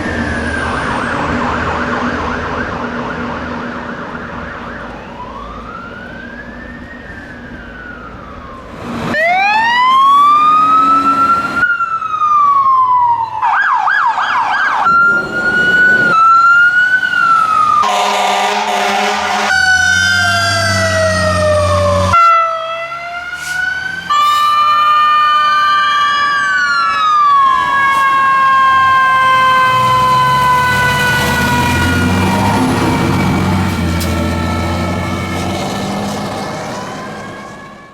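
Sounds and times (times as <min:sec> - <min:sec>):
fire truck sirens wailing: 0:00.0 - 0:37.9
fire truck air horn blast: 0:17.8 - 0:20.0, 0:22.0 - 0:22.6, 0:23.2 - 0:26.2.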